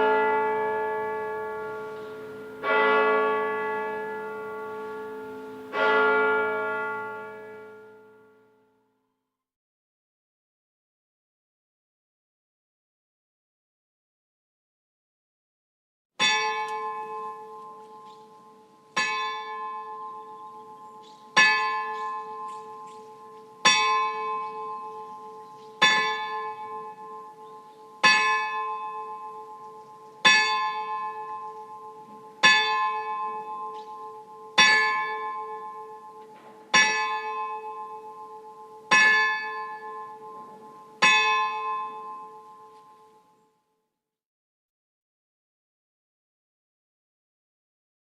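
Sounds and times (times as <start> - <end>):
large bell tolling: 0.0 - 8.3, 16.2 - 43.0.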